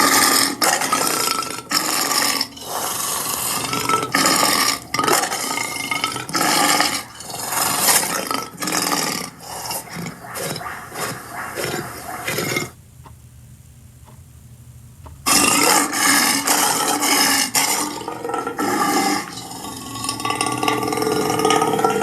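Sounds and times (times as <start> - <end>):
rough throaty vocal sound: 15.3 - 22.0.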